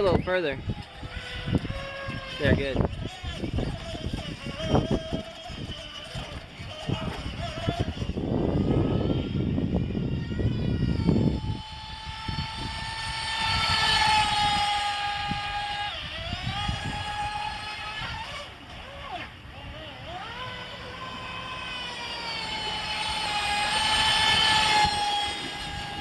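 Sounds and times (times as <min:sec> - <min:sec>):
small electric motor whining: 0:00.0 - 0:26.0
rough rushing noise: 0:20.1 - 0:26.0.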